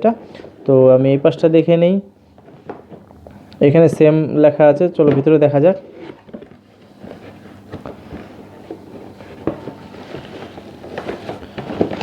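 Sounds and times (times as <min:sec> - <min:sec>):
cardboard box rustling: 0:05.9 - 0:12.0.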